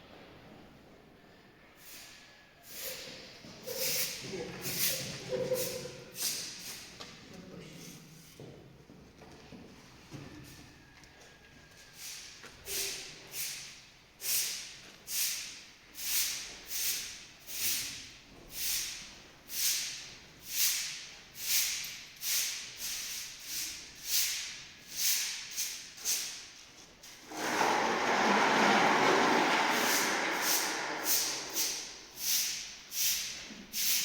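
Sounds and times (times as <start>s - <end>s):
bristle brush sweeping: 29.8s - 34.0s.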